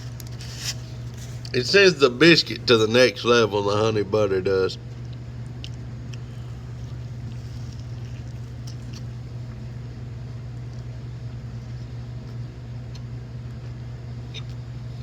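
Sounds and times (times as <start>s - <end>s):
steady low hum: 0.0s - 15.0s
person chewing: 4.9s - 9.7s.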